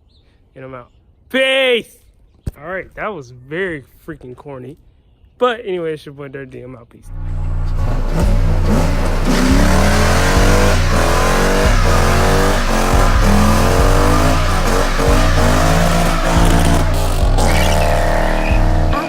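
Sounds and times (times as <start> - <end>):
car engine revving: 7.1 - 19.0
music with bass and beat: 7.1 - 19.0
tire squeal: 7.1 - 19.0.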